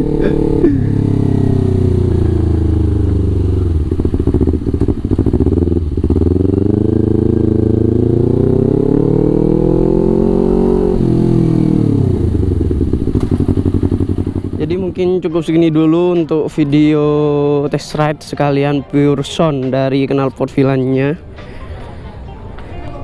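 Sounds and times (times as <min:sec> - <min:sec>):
motorcycle engine revving: 0:00.0 - 0:15.2.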